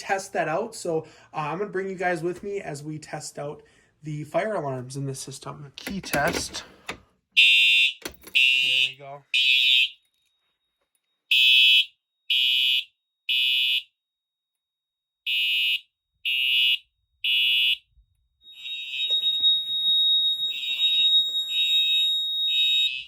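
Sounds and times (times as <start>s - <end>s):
fire alarm horn blasts: 7.4s - 10.6s, 11.3s - 14.0s, 15.2s - 23.0s
steady high tone: 18.5s - 23.0s.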